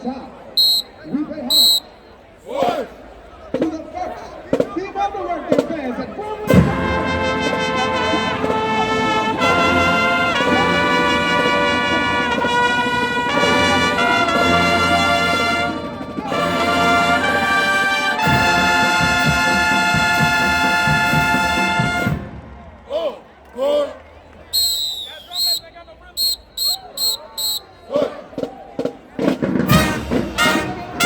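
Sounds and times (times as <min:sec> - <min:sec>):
brass band sustained chords: 0:03.6 - 0:22.8, 0:29.1 - 0:31.0.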